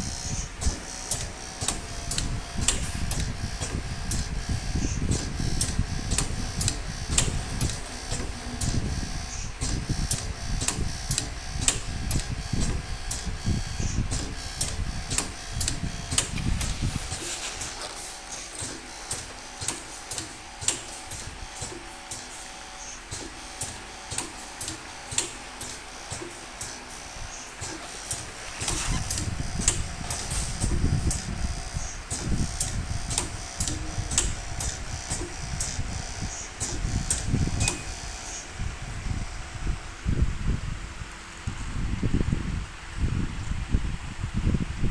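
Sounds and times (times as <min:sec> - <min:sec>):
mechanism clicking: 0:00.0 - 0:08.8
pneumatic cylinder clicks: 0:00.0 - 0:38.5.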